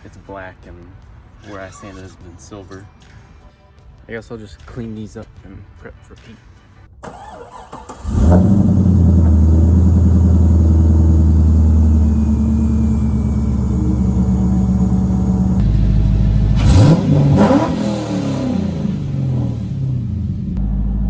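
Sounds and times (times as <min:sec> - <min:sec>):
car engine idling and revving: 0:07.1 - 0:21.0.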